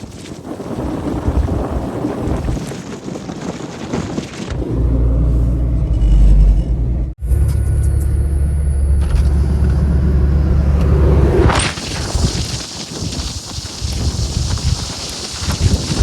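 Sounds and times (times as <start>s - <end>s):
vehicle road and engine rumble: 4.5s - 11.6s
wind hiss: 11.4s - 16.0s.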